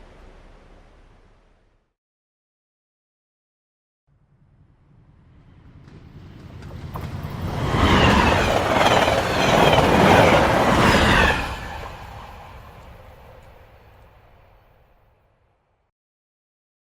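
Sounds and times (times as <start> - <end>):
train passing rumble: 4.1 - 15.2.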